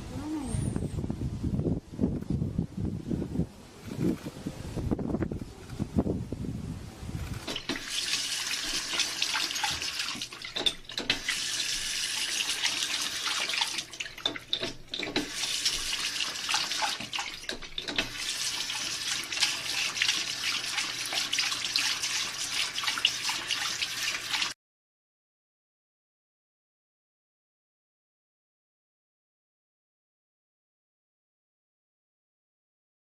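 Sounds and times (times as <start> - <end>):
water running from a tap: 7.6 - 24.6.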